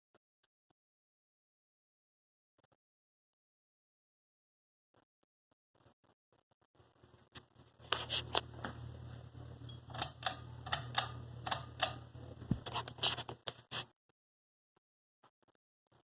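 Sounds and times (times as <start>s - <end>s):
ceiling fan motor humming: 7.0s - 13.3s.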